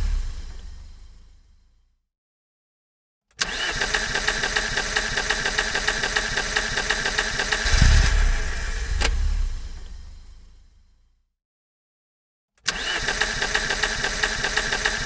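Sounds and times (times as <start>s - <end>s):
deep rumble: 0.0s - 1.0s, 7.6s - 10.8s
car starter motor cranking: 3.4s - 10.2s, 12.7s - 15.0s
sharp click: 7.6s - 9.9s.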